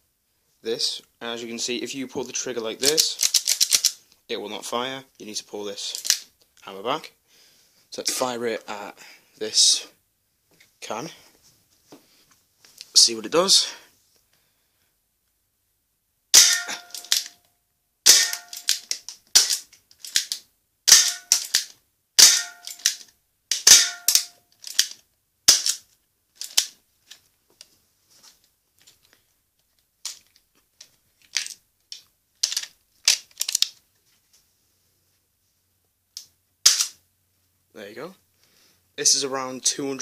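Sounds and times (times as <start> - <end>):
airsoft revolver shots: 16.4 - 17.3, 18.1 - 18.8, 19.4 - 19.6, 20.9 - 24.3, 25.5 - 25.8, 36.6 - 37.0.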